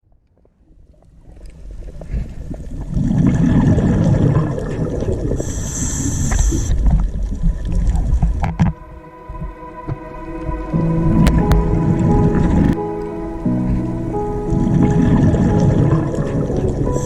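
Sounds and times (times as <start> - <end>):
underwater rumbling and gurgling: 0.0 - 17.0
high steady tone: 8.7 - 17.0.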